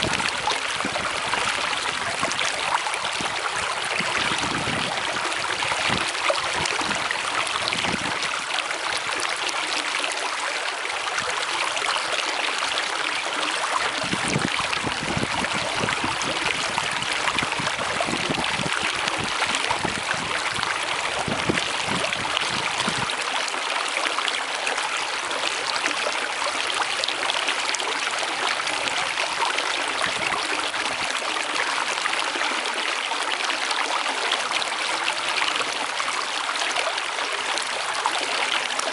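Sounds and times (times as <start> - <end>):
stream flowing: 0.0 - 38.9.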